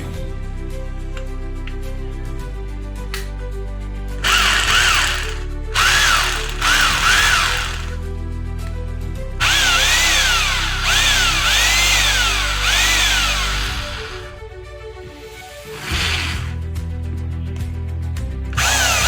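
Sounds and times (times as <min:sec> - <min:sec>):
background music: 0:00.0 - 0:19.0
hammer drill motor whining: 0:04.2 - 0:08.0, 0:09.4 - 0:14.5, 0:15.6 - 0:16.6, 0:18.6 - 0:19.0.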